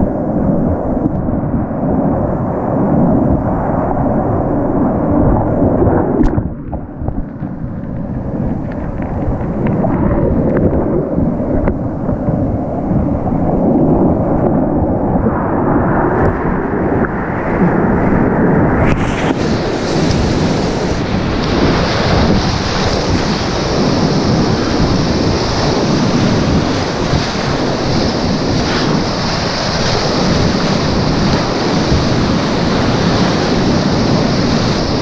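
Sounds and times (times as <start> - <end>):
wind on microphone: 0.0 - 35.0
whitewater rushing: 18.8 - 35.0.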